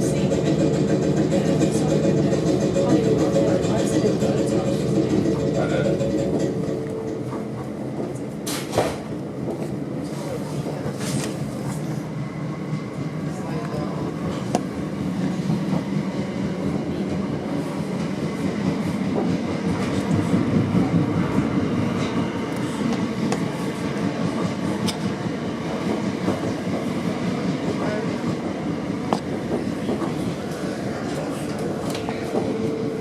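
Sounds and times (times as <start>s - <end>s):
train wheels rumbling: 0.0s - 33.0s.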